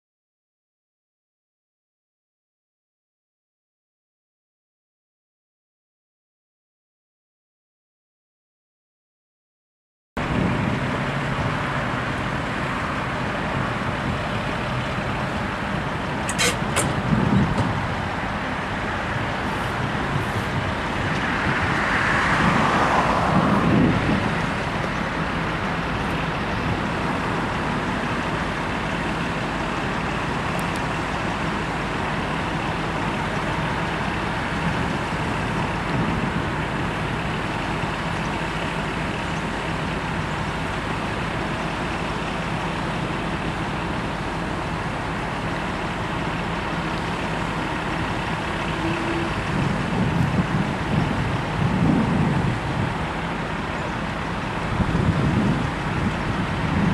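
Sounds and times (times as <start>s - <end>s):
road traffic noise: 10.2s - 56.9s
vehicle passing close: 18.6s - 27.4s.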